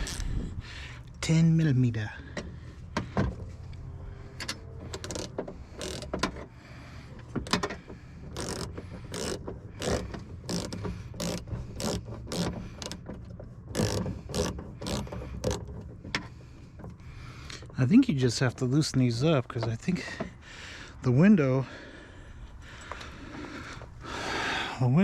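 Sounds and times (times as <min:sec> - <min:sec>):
ratchet clicking: 0:00.0 - 0:00.4, 0:04.4 - 0:06.4, 0:07.4 - 0:15.9.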